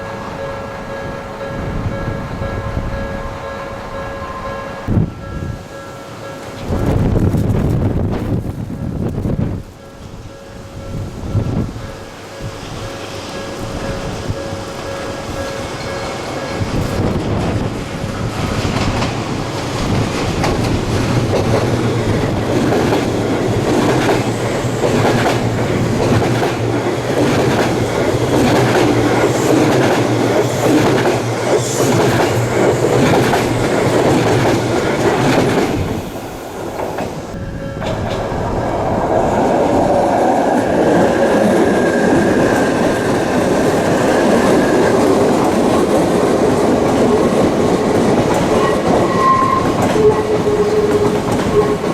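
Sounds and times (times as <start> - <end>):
train wheels clattering over rail joints: 14.0 - 39.5, 40.1 - 51.9.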